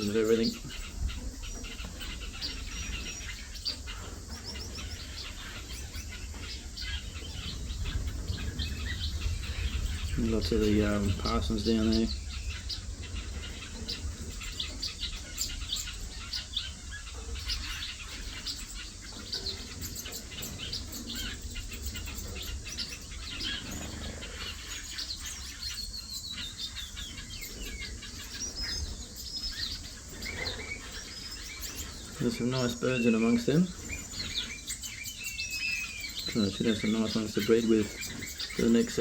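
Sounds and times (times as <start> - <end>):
finches chirping: 0.0 - 39.0
steady low rumble: 6.4 - 17.3.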